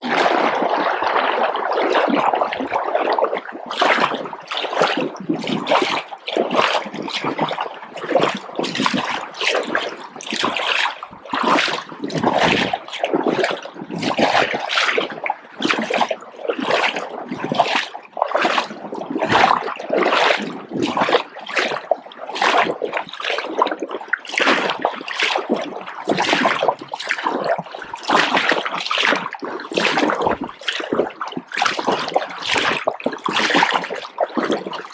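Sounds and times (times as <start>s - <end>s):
river water splashing: 26.1s - 34.9s.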